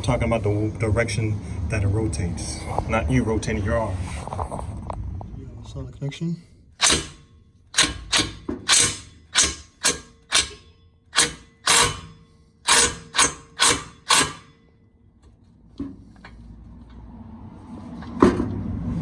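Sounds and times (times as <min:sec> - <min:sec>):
impact wrench bursts: 0:06.8 - 0:14.6.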